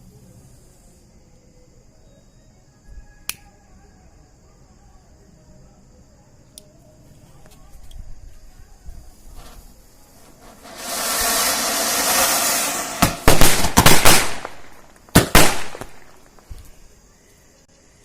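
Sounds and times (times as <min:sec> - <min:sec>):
fountain firework hissing: 0:10.2 - 0:16.0
firework bangs and cracks: 0:10.2 - 0:16.6.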